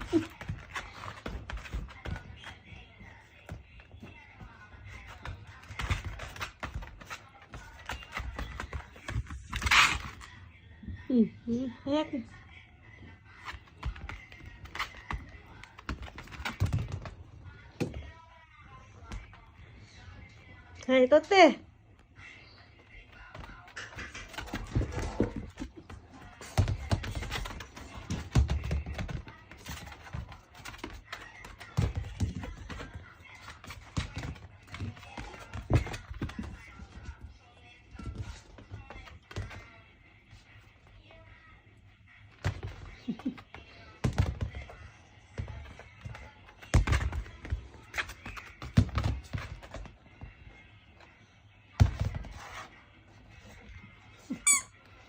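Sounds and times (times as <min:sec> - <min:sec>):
puppy thumping and scrambling: 0:00.0 - 0:10.3, 0:23.2 - 0:37.3
faint music: 0:00.0 - 0:55.0.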